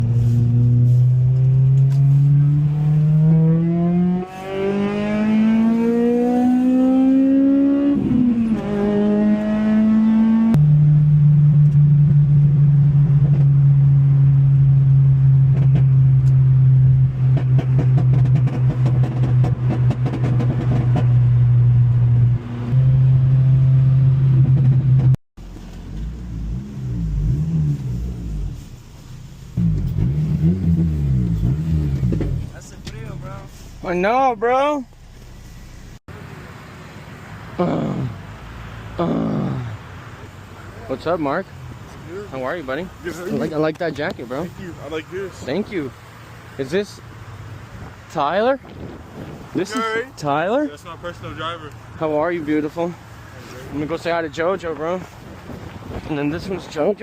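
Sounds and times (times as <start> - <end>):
car engine revving: 0.0 - 36.0.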